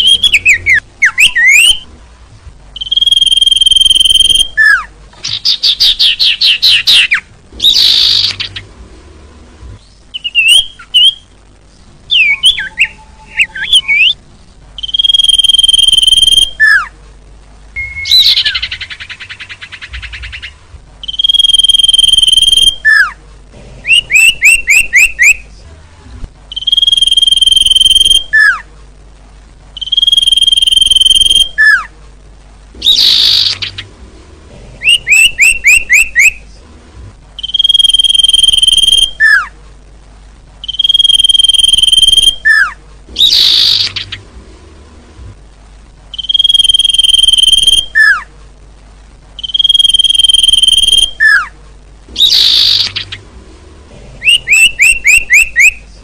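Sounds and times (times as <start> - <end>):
buzzy bird trill: 0.0 - 1.9, 2.8 - 8.7, 9.8 - 11.3, 12.1 - 14.2, 14.8 - 16.9, 17.8 - 23.2, 23.9 - 25.5, 26.5 - 28.6, 29.8 - 31.9, 32.8 - 34.0, 34.8 - 36.4, 37.4 - 39.5, 40.6 - 44.3, 46.1 - 48.3, 49.4 - 51.5, 52.1 - 53.3, 54.2 - 55.9
down-slurred bird chirps: 0.0 - 1.9, 2.7 - 8.7, 9.8 - 11.3, 12.1 - 14.2, 14.8 - 16.9, 17.8 - 23.2, 23.9 - 25.5, 26.5 - 28.6, 29.8 - 31.9, 32.8 - 33.9, 34.8 - 36.5, 37.4 - 39.5, 40.6 - 44.3, 46.1 - 48.3, 49.4 - 51.5, 52.1 - 53.2, 54.2 - 55.9.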